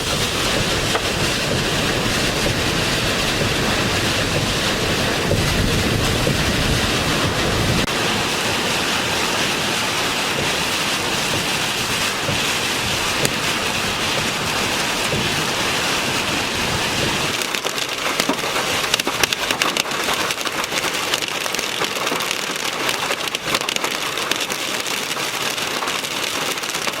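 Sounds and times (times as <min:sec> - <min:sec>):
low rumble: 0:00.0 - 0:17.4
heavy rain: 0:00.0 - 0:27.0
raindrops ticking on a surface: 0:00.0 - 0:27.0.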